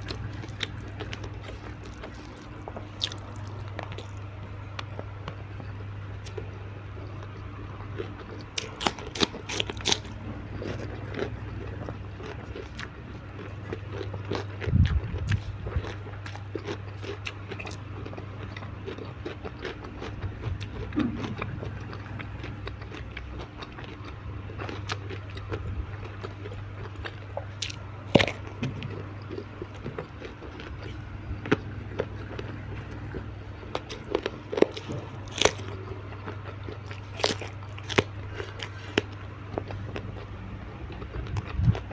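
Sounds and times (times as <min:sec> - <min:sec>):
crunchy bites and chewing: 0:00.0 - 0:41.9
steady low hum: 0:00.0 - 0:41.9.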